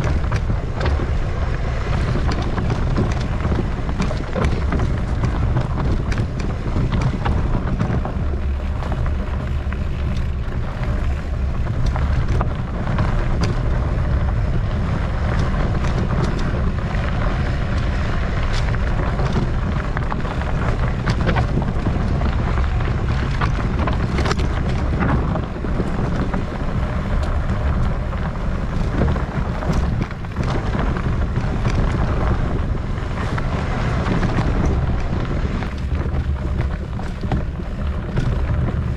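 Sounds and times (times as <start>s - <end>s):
bike clicking and rattling: 0.0s - 38.9s
wind buffeting microphone: 0.0s - 38.9s.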